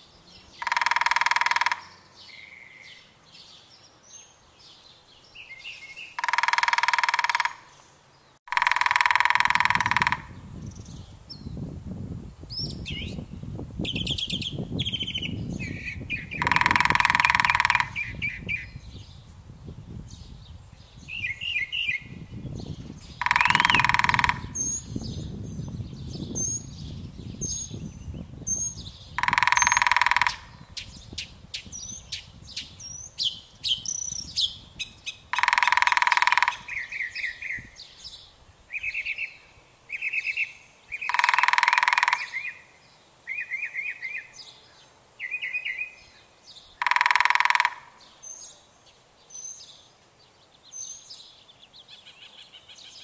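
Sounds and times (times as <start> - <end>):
birds chirping and trilling: 0.0 - 11.7, 12.4 - 53.0
woodpecker drumming: 0.5 - 2.5, 6.0 - 7.8, 8.5 - 10.4, 14.0 - 18.7, 23.0 - 25.0, 29.1 - 37.7, 40.0 - 42.7, 46.7 - 48.1.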